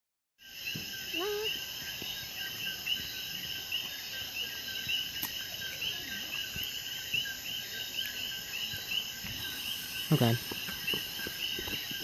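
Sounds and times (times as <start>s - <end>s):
crickets chirping: 0.4s - 12.0s
high insect hiss: 0.4s - 12.0s.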